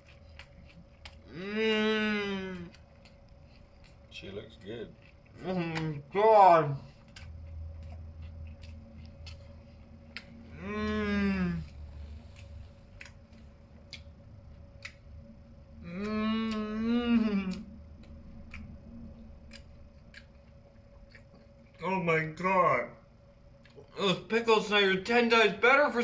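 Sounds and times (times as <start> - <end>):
chewing clicks: 0.0 - 1.3, 2.6 - 5.9, 7.0 - 10.4, 12.3 - 15.2, 17.4 - 21.8, 23.6 - 23.9
man humming with pleasure: 1.3 - 2.7, 10.5 - 11.7, 15.8 - 17.6.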